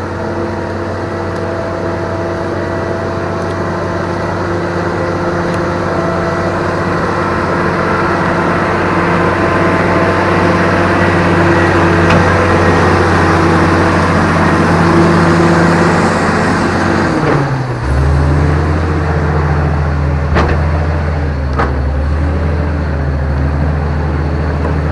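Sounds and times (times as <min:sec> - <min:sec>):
machine engine running under load: 0:00.0 - 0:24.9.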